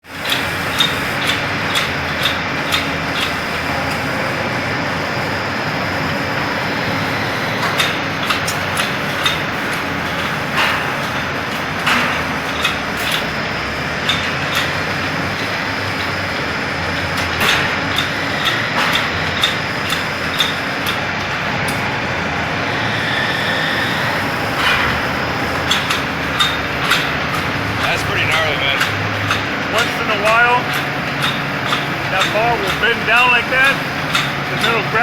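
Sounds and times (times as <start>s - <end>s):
forging machinery running: 0.0s - 35.0s
sharp metallic clanks: 23.4s - 35.0s.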